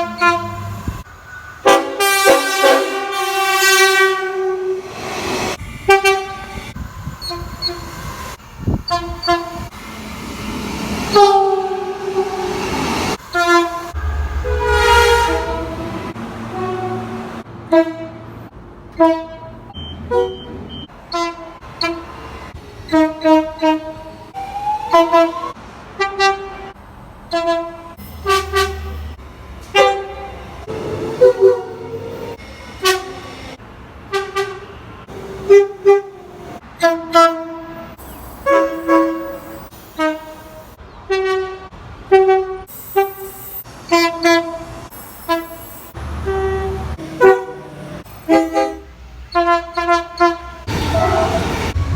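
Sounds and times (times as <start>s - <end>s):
train horn blasts: 0.0s - 1.0s, 1.6s - 8.0s, 8.6s - 20.5s, 21.1s - 22.1s, 22.8s - 44.7s, 45.3s - 51.9s.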